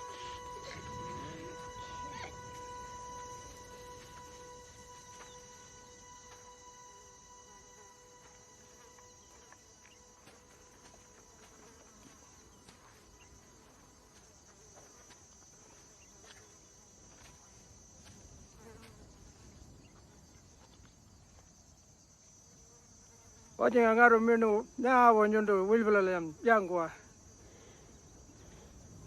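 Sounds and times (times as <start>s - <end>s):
insects buzzing and chirring: 0.0s - 29.0s.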